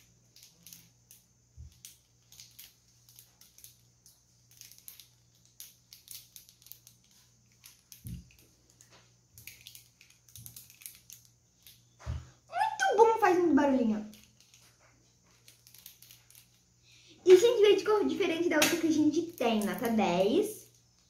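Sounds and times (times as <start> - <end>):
plastic packaging crinkling: 14.1 - 16.6.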